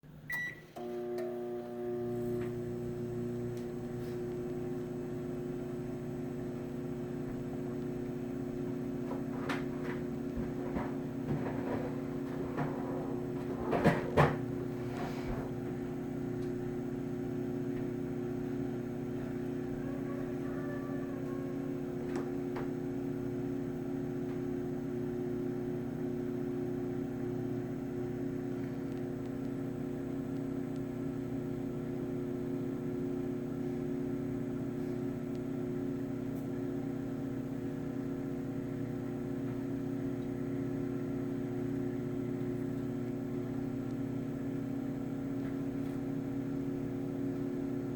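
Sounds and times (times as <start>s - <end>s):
microwave oven humming: 0.0s - 47.9s.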